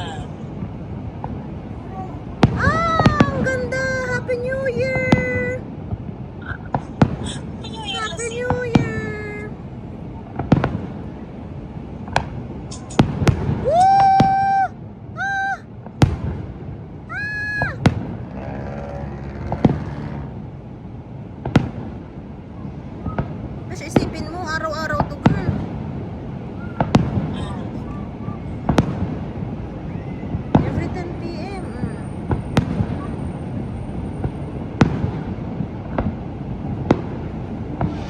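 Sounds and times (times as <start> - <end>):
firework bangs: 0.0 - 38.0
rumble of fireworks display: 0.0 - 38.0
faint firework pops: 10.3 - 11.0, 12.1 - 14.4, 15.8 - 16.4, 19.3 - 20.2, 21.4 - 21.9, 23.0 - 24.2, 26.6 - 27.6, 28.6 - 29.2, 31.8 - 33.1, 34.2 - 36.2, 36.8 - 38.0
person crying out: 13.6 - 15.6, 17.1 - 17.8.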